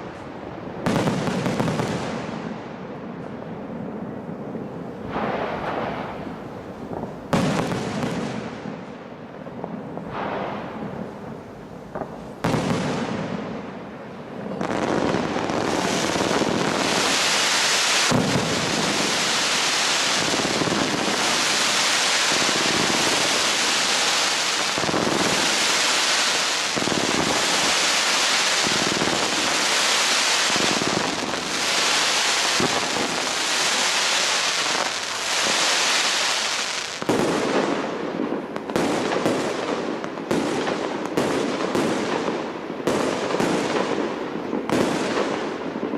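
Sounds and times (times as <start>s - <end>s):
hiss of fireworks burning: 0.0s - 45.9s
firework cracks and pops: 4.1s - 45.9s
firework bang: 5.1s - 8.6s, 18.0s - 37.8s.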